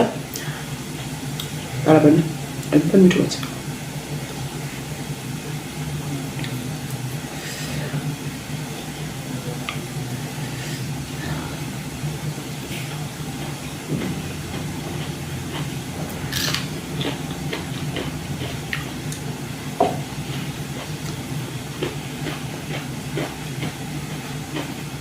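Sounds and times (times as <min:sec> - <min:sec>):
steady low hum: 0:00.0 - 0:25.0
soft chewing and mouth clicks: 0:14.5 - 0:19.3, 0:20.2 - 0:24.8.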